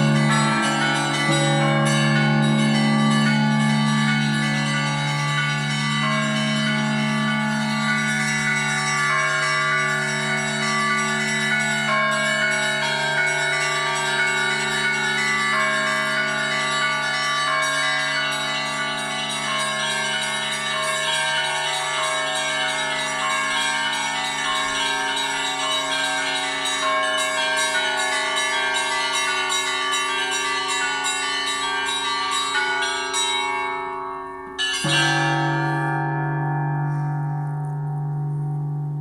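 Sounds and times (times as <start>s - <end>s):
peal of small church bells: 0.0s - 39.0s
large bell stroke: 34.8s - 39.0s.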